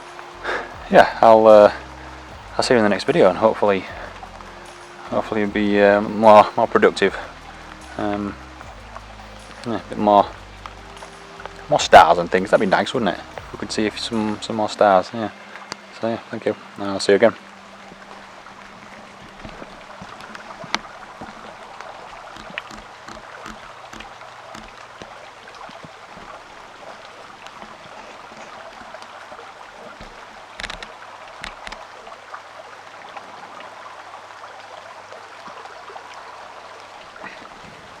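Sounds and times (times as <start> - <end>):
steady rain falling: 0.0 - 38.0
sharp taps: 22.3 - 26.4.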